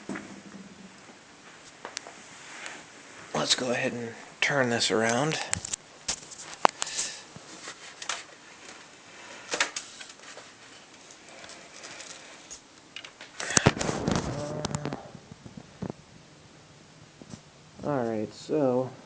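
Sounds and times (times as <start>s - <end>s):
computer case handling noise: 5.2s - 16.0s.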